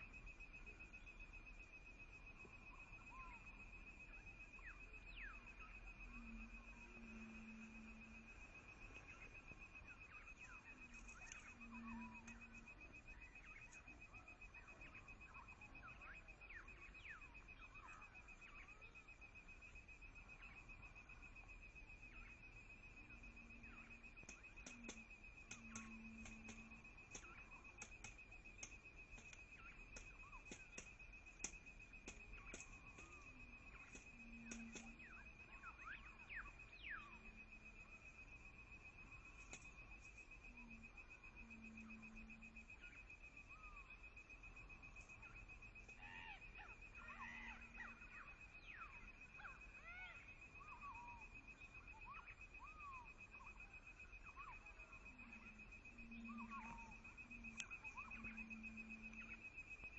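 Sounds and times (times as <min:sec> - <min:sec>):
bird chips and whistles: 0:23.1 - 0:38.0, 0:46.0 - 0:59.5.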